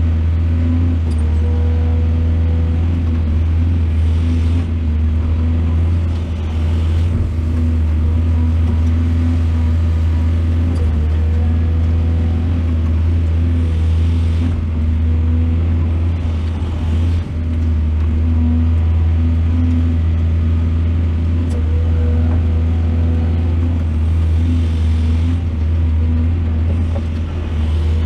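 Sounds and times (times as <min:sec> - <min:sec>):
excavator engine droning: 0:00.0 - 0:28.0.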